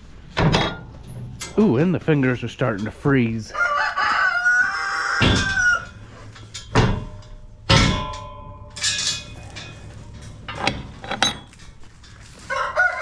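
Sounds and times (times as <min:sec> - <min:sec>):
metallic clanks and knocks: 0:00.2 - 0:02.0, 0:05.2 - 0:12.4
low steady hum: 0:05.4 - 0:12.5.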